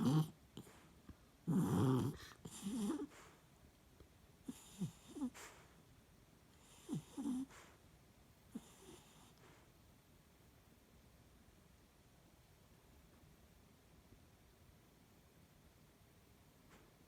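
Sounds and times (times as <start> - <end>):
dog snoring with squeaks: 0.0 - 0.8, 1.4 - 3.4, 4.4 - 5.6, 6.6 - 7.7, 8.5 - 9.4.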